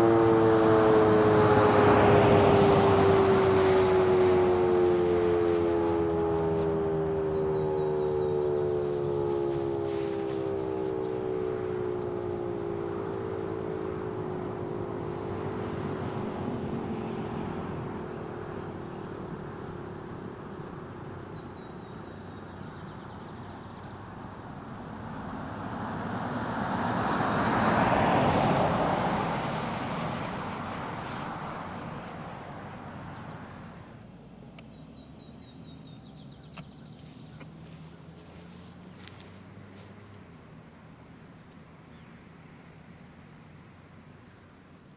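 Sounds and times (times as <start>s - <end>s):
warning siren winding down: 0.0s - 33.8s
vehicle passing on road: 0.0s - 44.9s.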